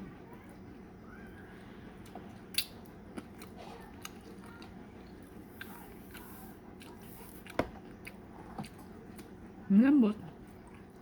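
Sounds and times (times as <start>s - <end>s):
soft chewing with clicks: 2.0s - 9.7s, 10.3s - 11.0s.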